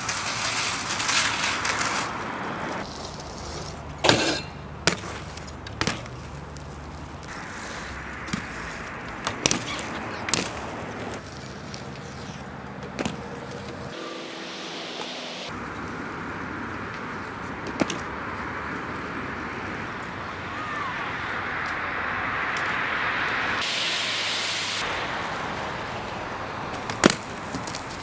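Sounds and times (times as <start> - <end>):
bike tyres rolling: 0.0 - 28.0
bike landing knocks: 4.0 - 6.3, 12.8 - 13.8.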